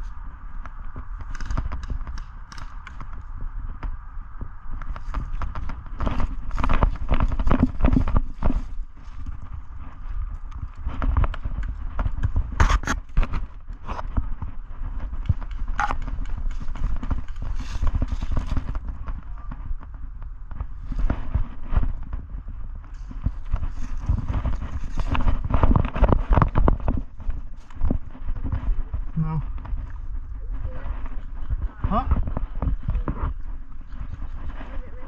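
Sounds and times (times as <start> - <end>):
low rumble on microphone: 0.0 - 35.0
footsteps: 4.8 - 35.0
gear knocking against camera: 10.8 - 22.2.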